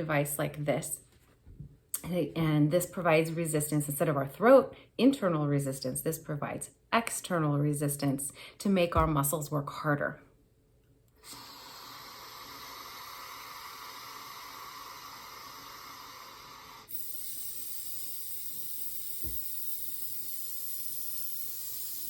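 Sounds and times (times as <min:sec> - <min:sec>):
breaths hissing through breathing trainer: 0:11.2 - 0:22.0.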